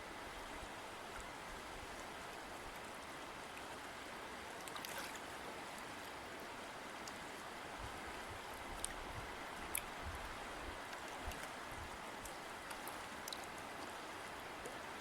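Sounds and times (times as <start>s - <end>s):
river water rushing: 0.0s - 15.0s
water splashes: 4.4s - 6.2s.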